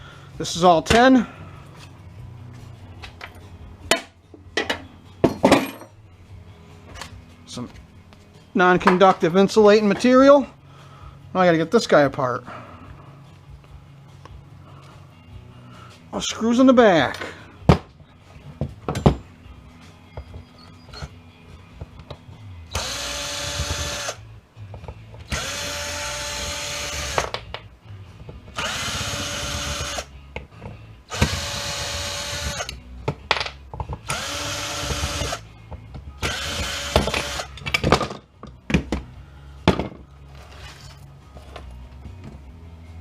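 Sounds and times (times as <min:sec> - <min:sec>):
power drill whining: 0:22.7 - 0:24.2, 0:25.3 - 0:27.3, 0:28.6 - 0:30.1, 0:31.1 - 0:32.8, 0:34.1 - 0:35.4, 0:36.2 - 0:37.6.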